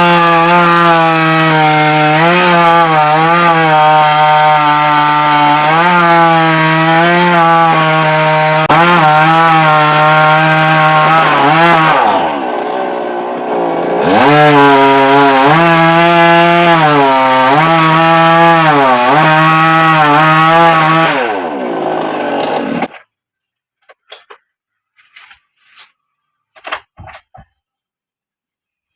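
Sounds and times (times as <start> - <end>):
chainsaw cutting wood: 0.0 - 23.1.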